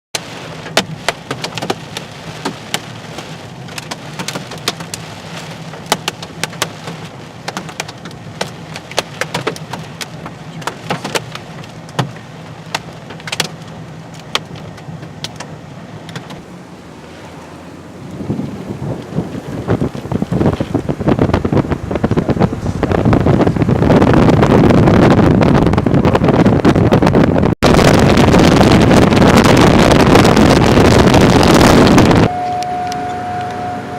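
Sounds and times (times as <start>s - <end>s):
raindrops ticking on hard surface: 0.2s - 15.5s
rushing rain: 0.2s - 33.9s
low hum: 27.6s - 33.9s.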